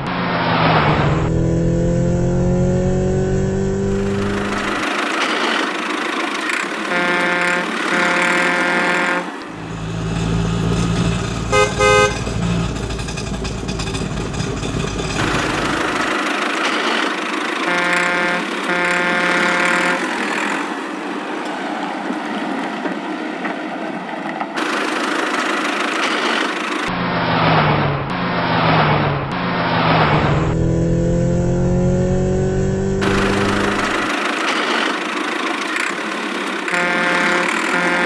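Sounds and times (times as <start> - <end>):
low engine rumble: 0.0 - 20.9, 24.8 - 38.0
cartoon car horn honking: 3.9 - 4.9, 6.7 - 9.8, 11.4 - 12.7, 17.6 - 20.5, 33.0 - 34.2, 36.6 - 38.0.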